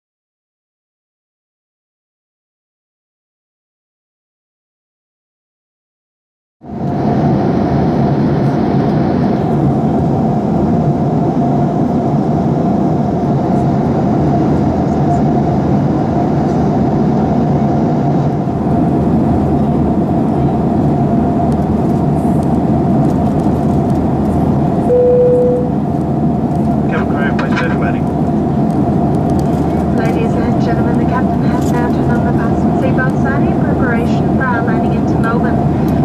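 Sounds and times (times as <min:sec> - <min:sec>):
airplane cabin roar: 0:06.6 - 0:36.0
constant hum-like tone: 0:06.7 - 0:36.0
short single tone: 0:24.9 - 0:25.8.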